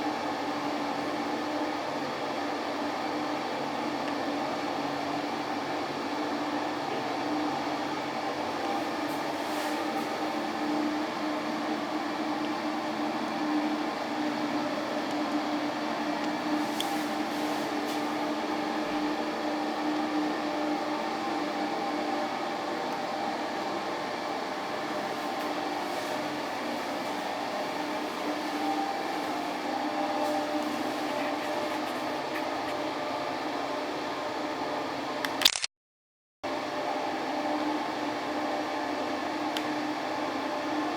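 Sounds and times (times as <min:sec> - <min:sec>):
steady mechanical hum: 0:00.0 - 0:35.4, 0:36.5 - 0:40.9
brief click: 0:35.2 - 0:35.7.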